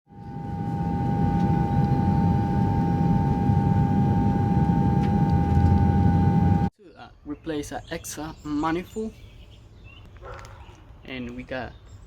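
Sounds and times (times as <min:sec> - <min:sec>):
high-pitched whine: 0:00.1 - 0:06.7
car engine rumbling: 0:00.2 - 0:06.7.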